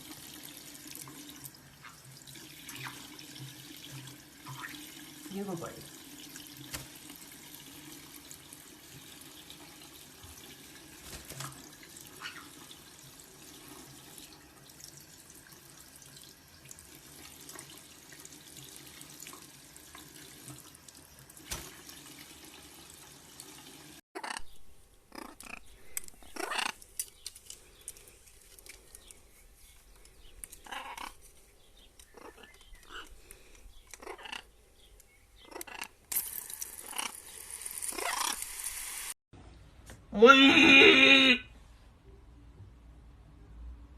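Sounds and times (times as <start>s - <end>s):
water running from a tap: 0.0s - 24.0s, 36.1s - 39.2s.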